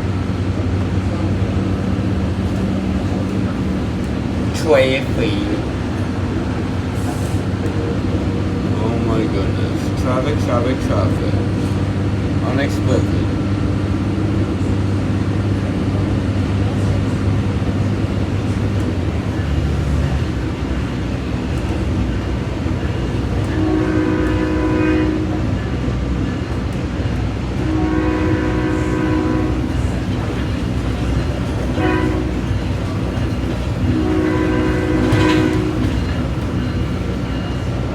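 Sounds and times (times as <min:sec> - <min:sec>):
train engine and rail rumble: 0:00.0 - 0:37.9
train horn blasts: 0:23.4 - 0:25.5, 0:27.6 - 0:29.9, 0:31.7 - 0:32.6, 0:33.8 - 0:36.2.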